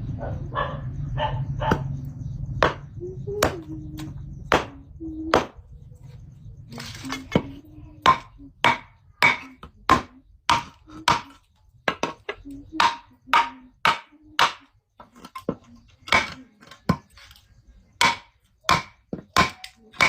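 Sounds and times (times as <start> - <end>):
blade chopping firewood: 2.6 - 5.6, 6.7 - 17.4, 18.0 - 20.0.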